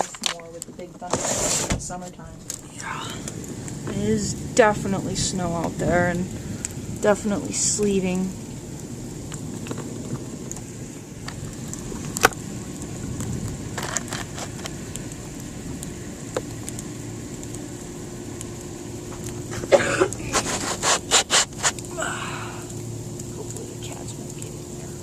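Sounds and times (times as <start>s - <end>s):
loud knocks and scraping: 1.0s - 2.0s.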